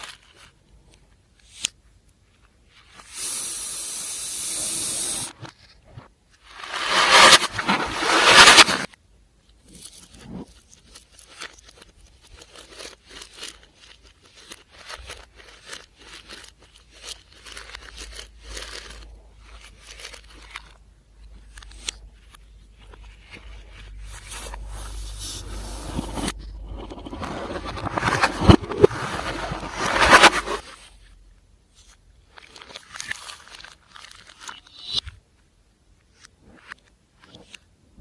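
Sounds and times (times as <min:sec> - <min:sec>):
loud spraying hiss: 0:03.1 - 0:05.3
slime crackling and squishing: 0:09.6 - 0:29.5.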